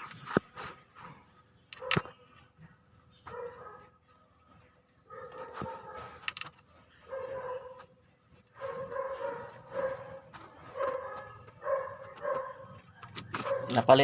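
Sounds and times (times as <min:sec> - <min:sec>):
dog barking and whining: 0:03.3 - 0:04.0, 0:05.1 - 0:06.2, 0:06.9 - 0:07.9, 0:08.5 - 0:12.8, 0:13.4 - 0:13.9.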